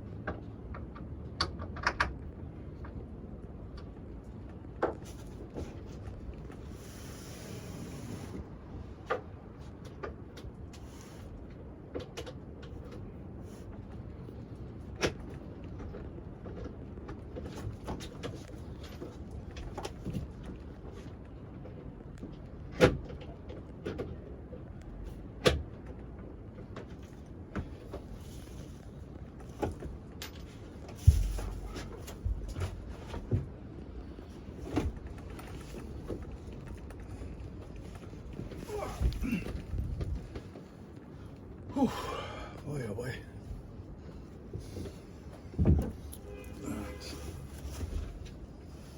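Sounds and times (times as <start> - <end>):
low background rumble: 0.0 - 48.9
wooden boards knocking and creaking: 44.5 - 46.2
bed boards knocking: 45.6 - 46.0
heavy thud: 45.6 - 46.1.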